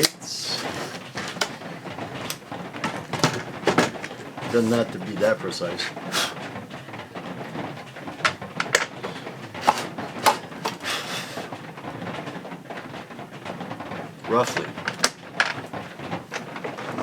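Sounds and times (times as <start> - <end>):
sharp clicks and knocks: 0.0 - 12.9, 13.6 - 17.0
short scrape: 9.5 - 11.5.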